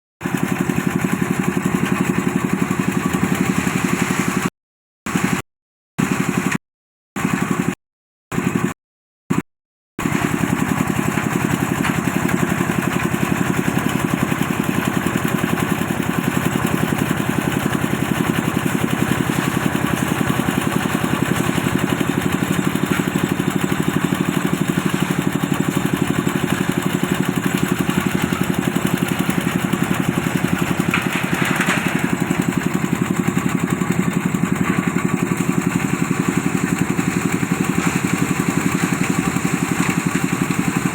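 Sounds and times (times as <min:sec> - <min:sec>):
engine chugging: 0:00.2 - 0:04.5, 0:06.0 - 0:06.6, 0:07.2 - 0:09.4, 0:10.0 - 0:40.9.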